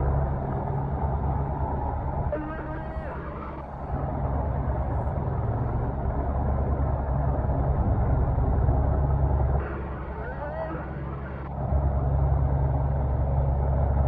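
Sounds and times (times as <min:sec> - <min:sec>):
helicopter rotor and engine drone: 0:00.0 - 0:14.0.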